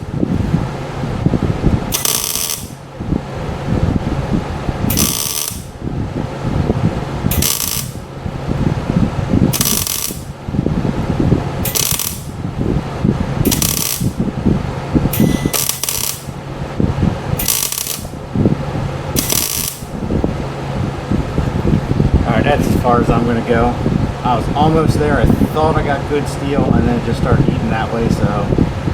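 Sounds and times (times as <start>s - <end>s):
arc welder sizzling: 0.0s - 3.0s, 4.3s - 5.9s, 7.1s - 8.6s, 9.4s - 10.6s, 11.4s - 14.4s, 15.1s - 20.6s
steady low hum: 0.0s - 28.9s.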